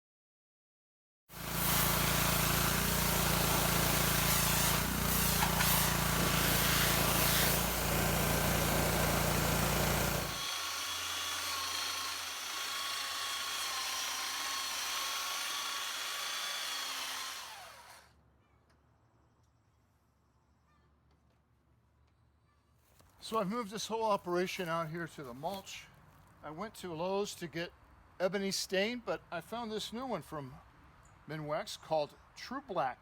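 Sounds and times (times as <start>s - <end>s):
power tool with high whine: 1.3s - 18.1s
power tool with low motor hum: 1.3s - 18.1s.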